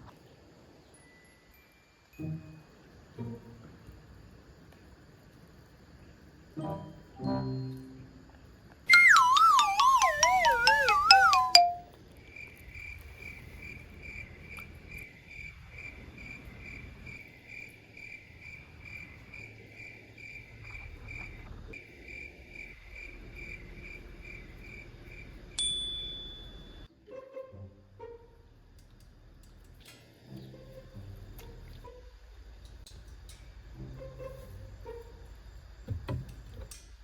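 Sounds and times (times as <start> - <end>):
cricket chirping: 0.1 - 26.9, 28.6 - 37.0
wobbling falling whistle effect: 8.9 - 11.9
bright ding: 25.6 - 26.8.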